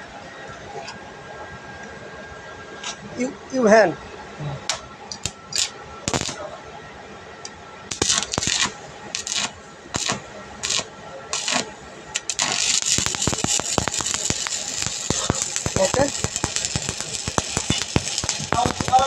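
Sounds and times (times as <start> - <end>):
welding arc crackling: 4.6 - 6.6, 7.4 - 19.0
sharp welding pops: 4.7 - 6.4, 7.4 - 19.0.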